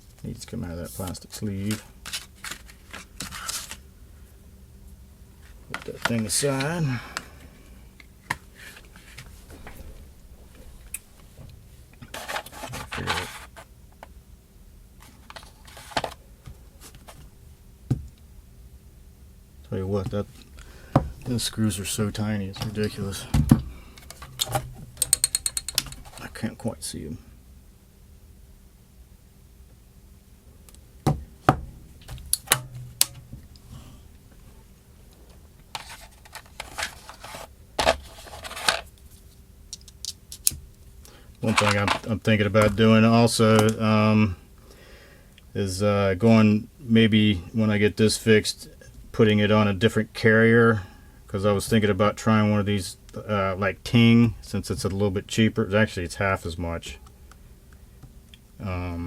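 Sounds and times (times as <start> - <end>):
scraping and rustling: 0.9 - 3.8, 8.2 - 13.7, 15.0 - 16.2, 21.1 - 26.5, 35.3 - 39.4
small parts clicking and tapping: 24.0 - 26.3, 39.7 - 40.6.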